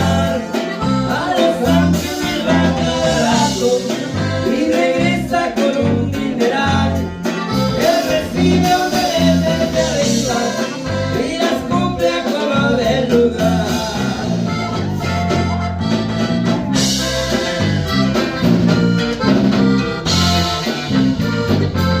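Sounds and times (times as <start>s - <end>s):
accordion playing: 0.0s - 22.0s
bass and guitar beat: 0.0s - 22.0s.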